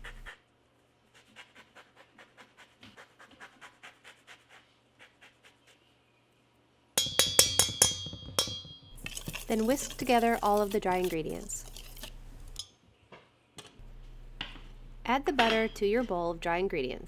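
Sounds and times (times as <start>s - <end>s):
metal clinking against bowl: 7.0s - 12.7s
grater scraping orange: 9.0s - 12.6s.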